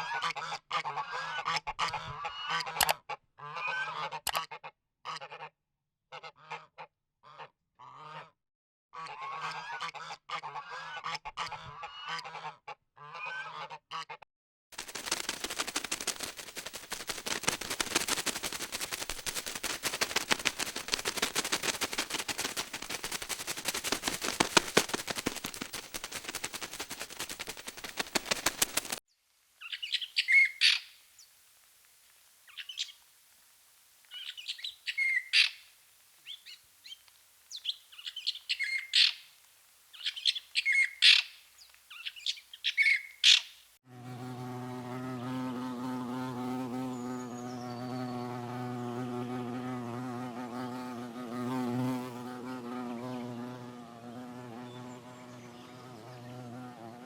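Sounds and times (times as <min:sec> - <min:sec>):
rapid crackling rattle: 0:14.8 - 0:29.0
bird chirping: 0:29.6 - 0:31.0, 0:40.0 - 0:43.6.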